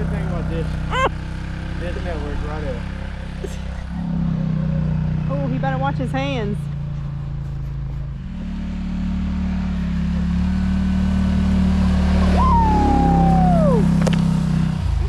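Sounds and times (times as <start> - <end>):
vehicle engine running: 0.0 - 15.0
brief high falling tone: 12.2 - 14.0.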